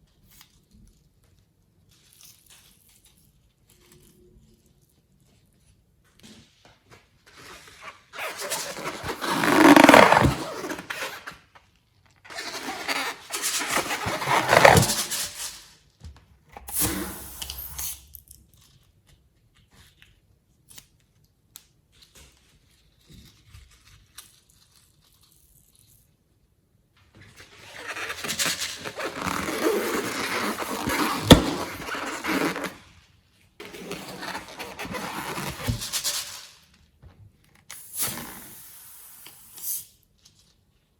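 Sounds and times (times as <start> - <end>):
slime squishing and scraping: 7.4 - 11.4, 12.3 - 15.5, 27.4 - 32.9, 33.6 - 36.3.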